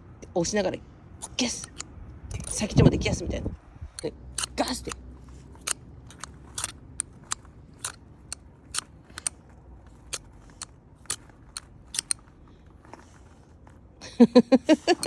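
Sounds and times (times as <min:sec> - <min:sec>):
fire starter rod scraping: 0:01.2 - 0:13.8.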